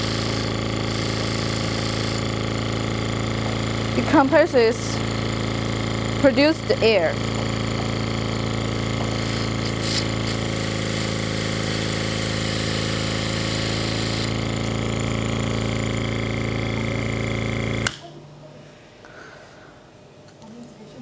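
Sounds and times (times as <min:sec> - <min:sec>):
air compressor humming: 0:00.0 - 0:20.3
hiss: 0:09.2 - 0:14.3
compressor switch click: 0:17.7 - 0:18.1.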